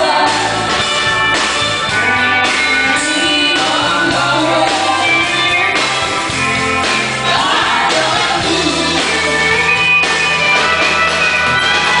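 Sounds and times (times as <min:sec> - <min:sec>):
lead singer singing: 0:00.0 - 0:01.0, 0:02.0 - 0:10.0
bass: 0:00.0 - 0:12.0
drums: 0:00.0 - 0:12.0
guitar: 0:00.0 - 0:12.0.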